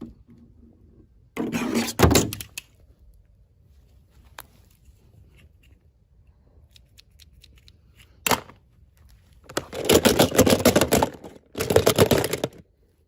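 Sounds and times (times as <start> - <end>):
small clicks: 5.3 - 8.2.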